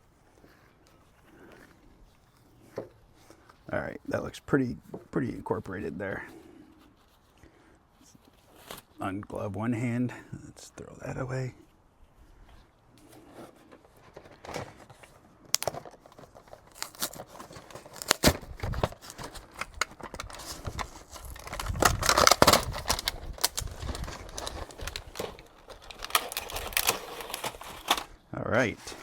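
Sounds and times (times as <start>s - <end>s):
plastic packaging crinkling: 13.6s - 28.1s.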